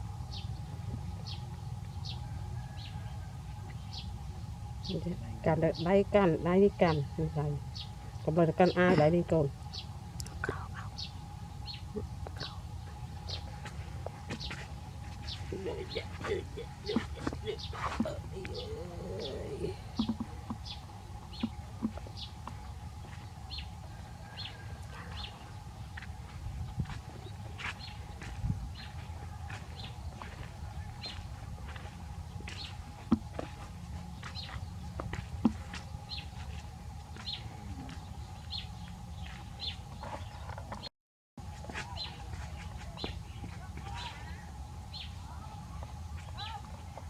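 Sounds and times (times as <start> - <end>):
faint steady hum: 0.0 - 40.8, 41.4 - 47.0
bird chirping: 14.3 - 23.7.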